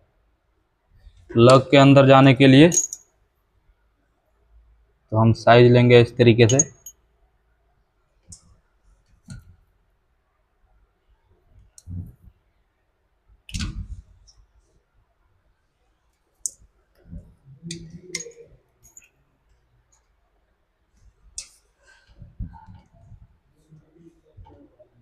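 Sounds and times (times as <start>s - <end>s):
hand tools clicking and knocking: 2.7s - 3.0s, 6.5s - 6.9s, 18.2s - 19.1s.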